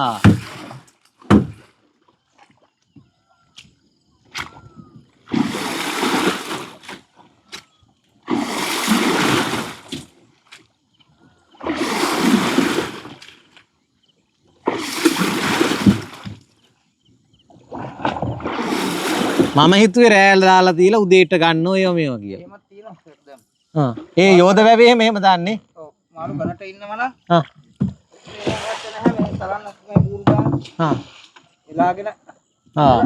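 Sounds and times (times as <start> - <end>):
water splashing hard: 0.0 - 1.7, 5.2 - 7.2, 8.2 - 10.2, 11.6 - 13.5, 14.6 - 16.4, 17.7 - 20.1
small knocks: 29.0 - 31.1.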